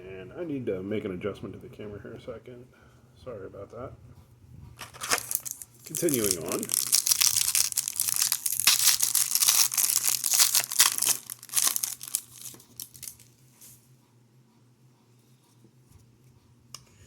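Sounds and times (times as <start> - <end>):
wrapper tearing and crinkling: 4.8 - 13.3.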